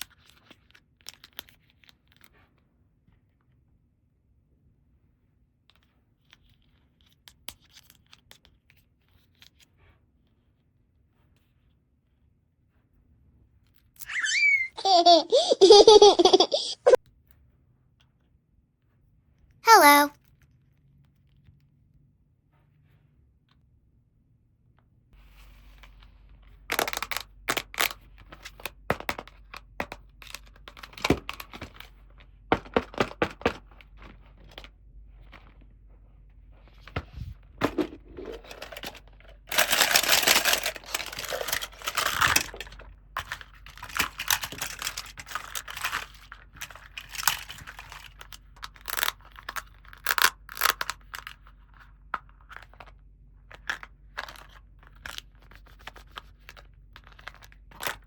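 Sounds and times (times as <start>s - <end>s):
packaging crinkling and clicking: 26.7s - 31.9s, 37.7s - 51.5s
packaging tearing and rustling: 37.7s - 51.3s.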